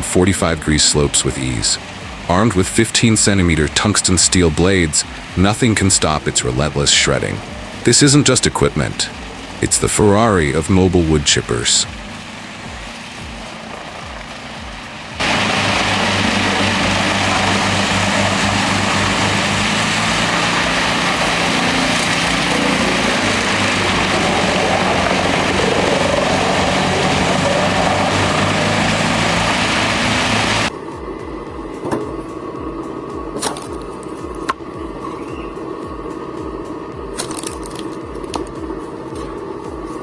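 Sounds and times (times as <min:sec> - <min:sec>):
sharp cracks: 0:00.0 - 0:30.7
wood chipper running: 0:00.0 - 0:40.0.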